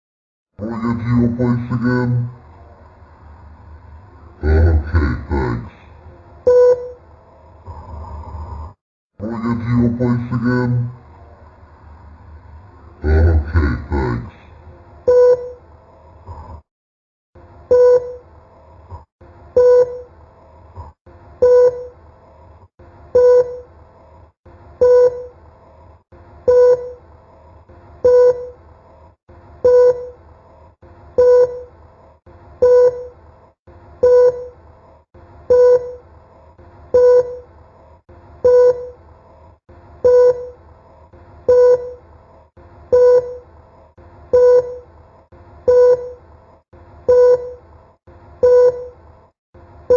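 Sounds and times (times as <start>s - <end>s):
short low beep: 6.5s - 7.0s, 15.1s - 15.6s, 17.7s - 18.3s, 19.6s - 20.1s, 21.4s - 22.0s, 23.2s - 23.7s, 24.8s - 25.4s, 26.5s - 27.0s, 28.0s - 28.6s, 29.6s - 30.2s, 31.2s - 31.7s, 32.6s - 33.2s, 34.0s - 34.6s, 35.5s - 36.0s, 36.9s - 37.5s, 38.4s - 39.0s, 40.0s - 40.6s, 41.5s - 42.0s, 42.9s - 43.5s, 44.3s - 44.9s, 45.7s - 46.2s, 47.1s - 47.6s, 48.4s - 49.0s.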